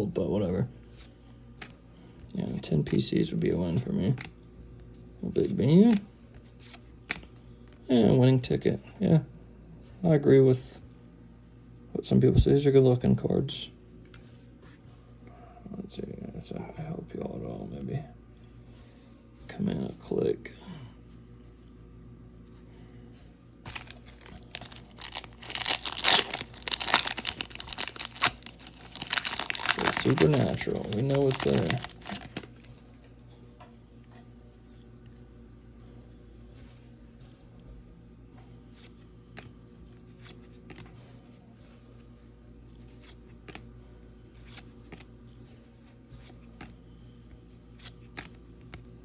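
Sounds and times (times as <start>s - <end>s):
steady low hum: 0.0s - 49.0s
foil wrapper tearing and crinkling: 23.7s - 32.7s
trading cards sliding and flicking: 47.7s - 48.8s.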